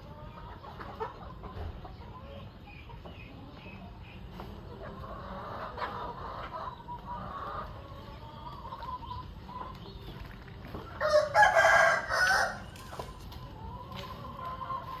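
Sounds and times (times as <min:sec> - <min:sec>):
hens clucking softly: 0:00.0 - 0:15.0
rooster crowing: 0:11.0 - 0:12.8.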